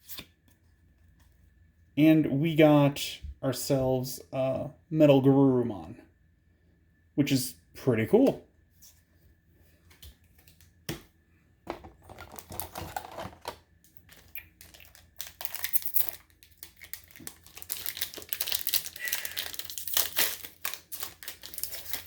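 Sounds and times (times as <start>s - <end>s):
foil wrapper crinkling: 12.0s - 22.0s.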